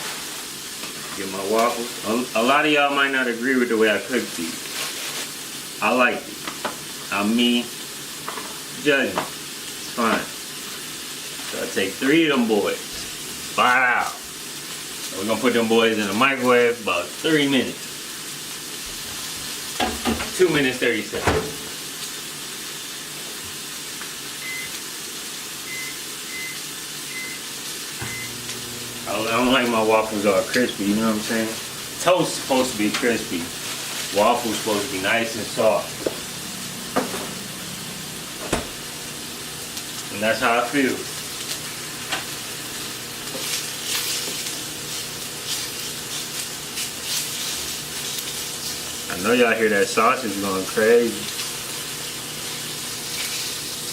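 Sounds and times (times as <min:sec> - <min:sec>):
sausages sizzling in a pan: 0:00.0 - 0:53.9
microwave keypad beeping: 0:24.4 - 0:24.8, 0:25.7 - 0:27.4, 0:28.0 - 0:28.5.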